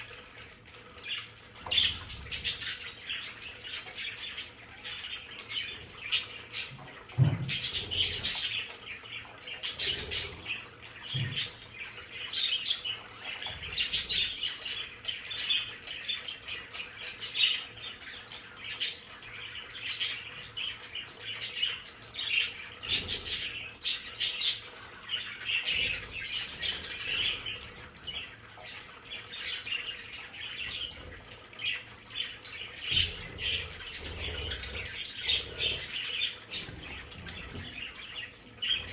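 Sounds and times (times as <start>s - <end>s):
budgerigars chattering and chirping: 31.6s - 38.9s.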